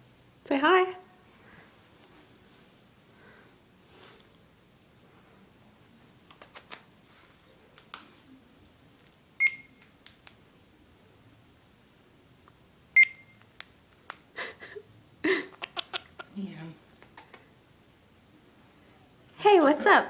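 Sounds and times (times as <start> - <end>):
parrot mimicking microwave beeps: 9.4 - 9.8, 13.0 - 13.4
parrot clicks: 15.6 - 16.3.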